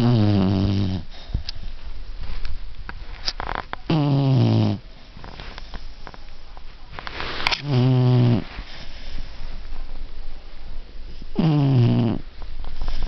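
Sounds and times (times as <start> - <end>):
dog snoring: 0.0 - 1.3, 3.9 - 4.9, 7.5 - 9.1, 11.3 - 13.0.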